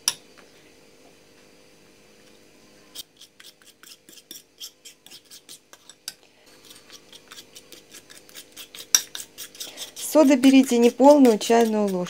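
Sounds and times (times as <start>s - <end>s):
utensil scraping against dish: 2.9s - 12.0s.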